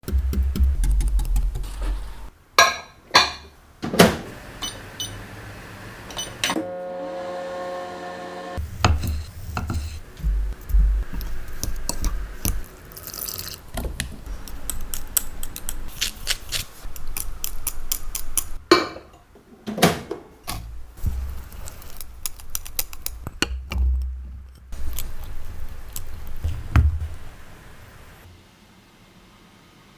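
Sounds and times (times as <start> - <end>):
dishes and utensils clattering: 2.6 - 3.5, 18.7 - 20.3
steady humming tone: 6.0 - 9.0.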